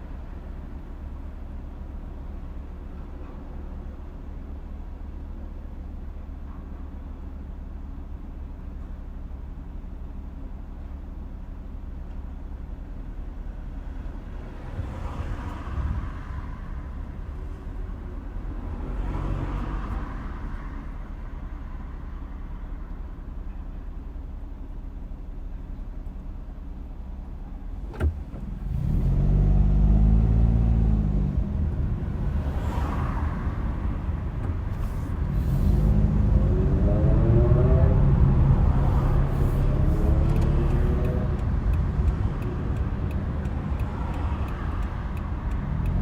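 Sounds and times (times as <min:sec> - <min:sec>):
car road and engine noise: 0:00.0 - 0:46.0
traffic passing: 0:13.7 - 0:23.3, 0:28.6 - 0:46.0
engine revving pitch rising: 0:35.2 - 0:43.6.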